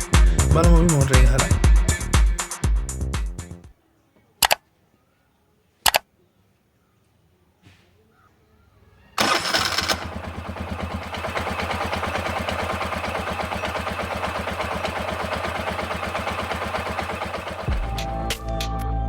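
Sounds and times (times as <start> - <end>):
engine idling with pulsing beat: 0.0 - 3.6, 10.0 - 18.7
starter motor cranking: 9.2 - 18.5.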